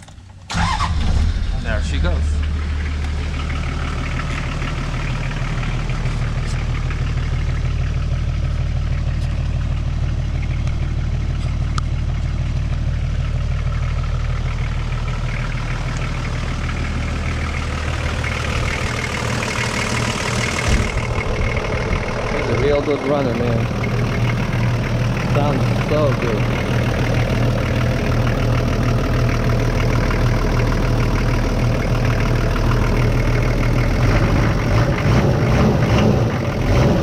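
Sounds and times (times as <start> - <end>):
diesel engine idling: 0.0 - 37.0.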